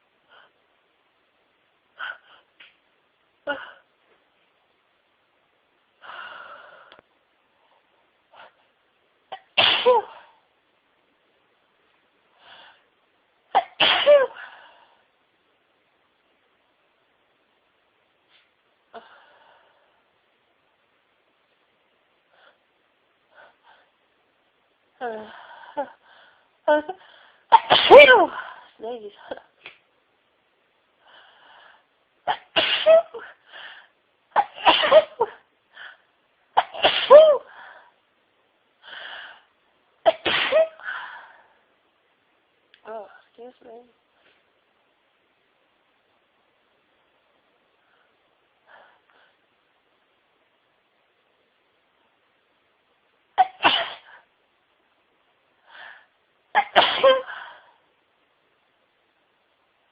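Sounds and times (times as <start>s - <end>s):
woman sneezing: 9.3s - 10.3s, 13.6s - 14.5s, 27.5s - 28.6s, 32.3s - 33.4s, 34.4s - 35.4s, 36.6s - 37.6s, 40.1s - 40.8s, 53.4s - 54.2s, 56.6s - 57.5s
breathy in-breath: 38.8s - 39.5s, 55.6s - 56.2s.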